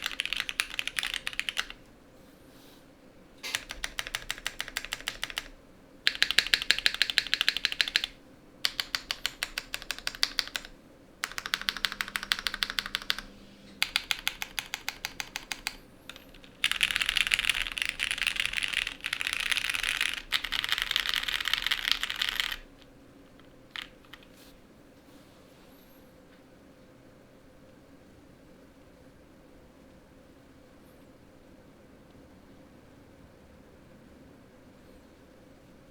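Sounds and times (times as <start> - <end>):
mechanical keyboard typing: 0.0 - 1.8, 3.4 - 24.3.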